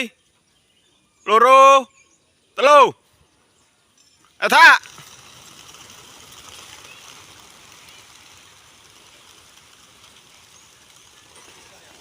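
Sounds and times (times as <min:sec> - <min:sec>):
whir of many pigeon wingbeats: 0:04.4 - 0:12.0.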